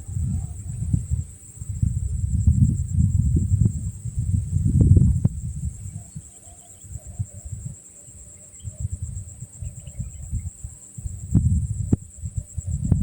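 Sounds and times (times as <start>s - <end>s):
low rumbling microphone noise: 0.0s - 6.0s, 8.6s - 13.0s
insects chirring: 0.0s - 13.0s.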